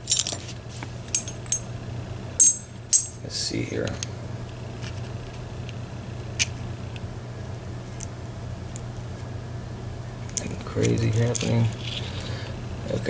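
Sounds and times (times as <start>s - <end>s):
steady low hum: 0.0s - 13.0s
small metal lock parts clicking: 1.2s - 1.7s, 2.4s - 3.2s.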